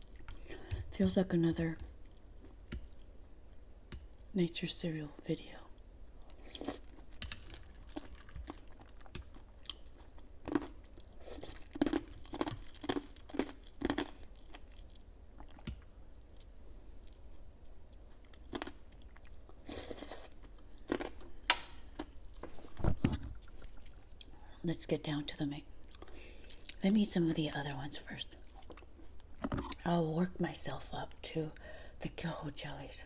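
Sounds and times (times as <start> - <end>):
chewing and crunching cereal: 0.0 - 0.8, 5.7 - 24.6, 25.8 - 29.9.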